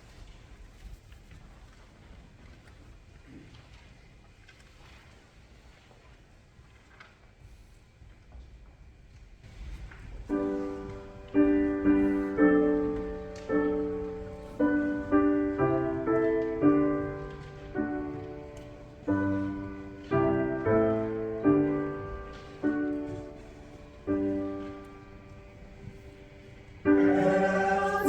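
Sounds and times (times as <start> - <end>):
piano playing slow chords: 10.3 - 28.0.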